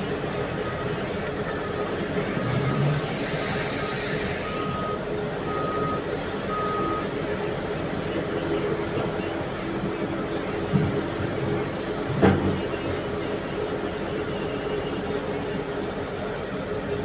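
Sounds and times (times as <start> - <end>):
heavy diesel machinery running: 0.0 - 17.0
backup alarm beeping: 0.6 - 7.2.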